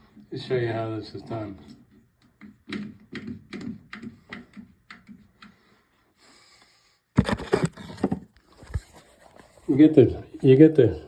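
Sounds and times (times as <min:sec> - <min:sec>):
clattering knocks and scrapes: 0:07.2 - 0:09.7.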